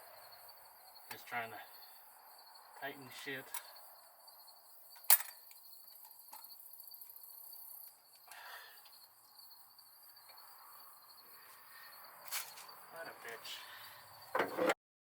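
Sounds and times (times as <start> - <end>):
crickets chirping: 0.0 - 14.8
brief rustle: 12.2 - 13.4
tool clanking on metal: 14.3 - 14.8.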